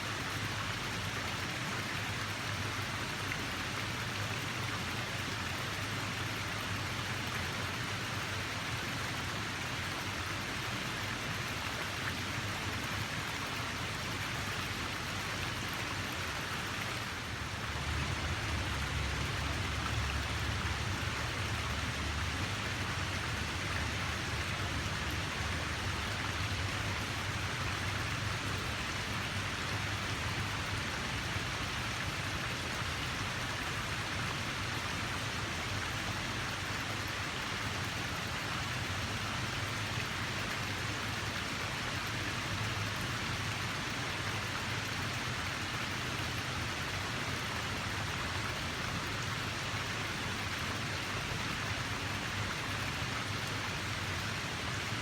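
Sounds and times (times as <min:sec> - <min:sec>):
flowing water rushing: 0:00.0 - 0:55.0.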